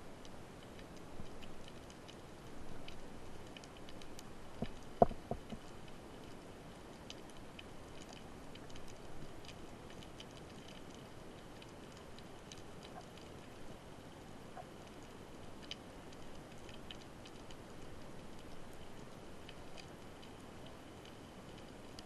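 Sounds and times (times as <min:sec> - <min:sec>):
snapping shrimp clicks underwater: 0:00.6 - 0:06.0
dull underwater knocks: 0:04.6 - 0:05.6.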